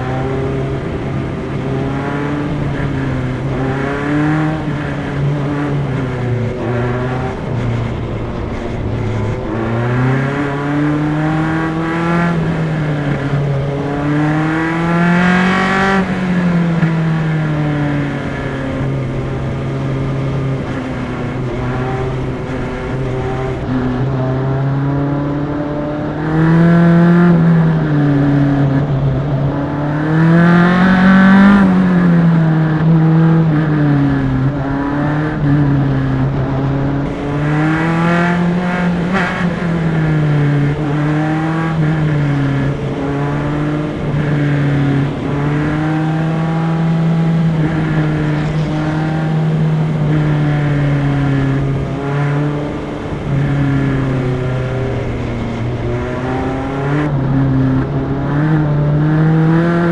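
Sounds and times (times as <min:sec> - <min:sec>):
race car engine revving: 0:00.0 - 0:59.9.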